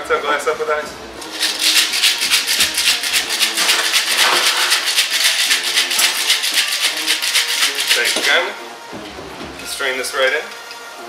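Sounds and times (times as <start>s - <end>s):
ice rattling in cocktail shaker: 1.2s - 8.5s.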